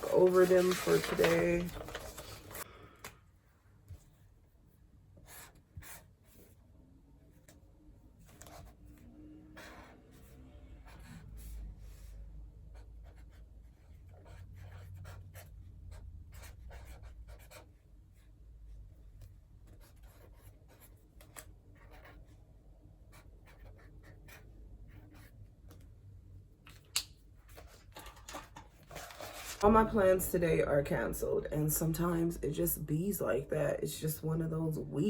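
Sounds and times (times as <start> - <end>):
pen scratching on paper: 5.2 - 6.6, 8.2 - 12.1, 12.7 - 18.3, 19.6 - 22.4, 23.0 - 25.4.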